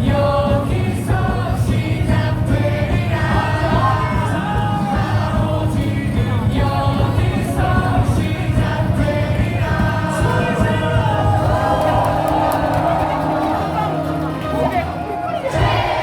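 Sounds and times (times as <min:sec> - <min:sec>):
crowd singing in unison: 0:00.0 - 0:16.0
loud music from speakers: 0:00.0 - 0:16.0.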